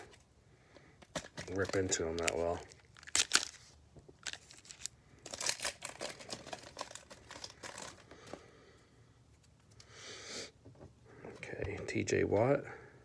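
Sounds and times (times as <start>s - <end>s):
card pack wrapper crinkling and tearing: 1.1s - 8.1s.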